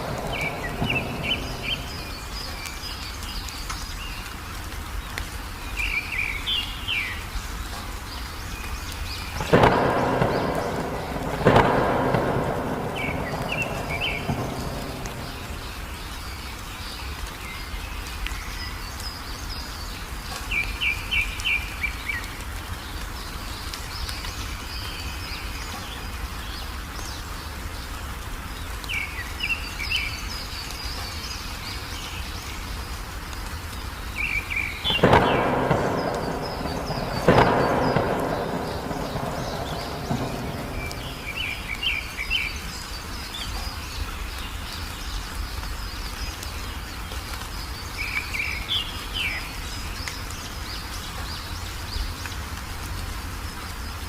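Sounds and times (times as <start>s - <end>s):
loud thunderclaps: 0.0s - 3.3s, 9.3s - 16.2s, 34.2s - 42.7s
songbirds chirping: 0.0s - 54.0s
steady rain: 0.0s - 54.0s.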